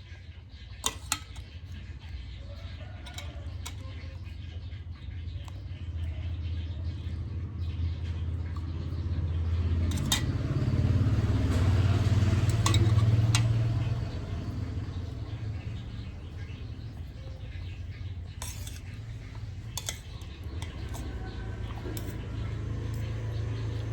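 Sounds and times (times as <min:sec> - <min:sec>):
cutlery clinking on plate: 0:03.0 - 0:03.8, 0:09.9 - 0:10.4, 0:12.4 - 0:13.7, 0:18.4 - 0:22.2
motorcycle passing by: 0:06.5 - 0:23.9.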